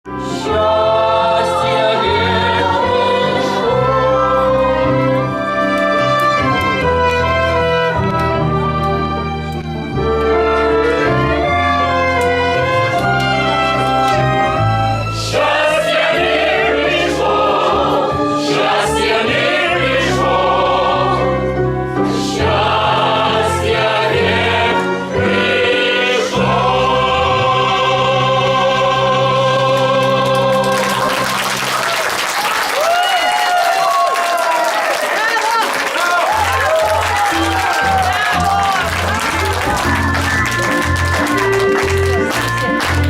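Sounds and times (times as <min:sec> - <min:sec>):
instrumental accompaniment: 0:00.1 - 0:32.1, 0:36.3 - 0:43.0
audience applause: 0:29.9 - 0:43.0.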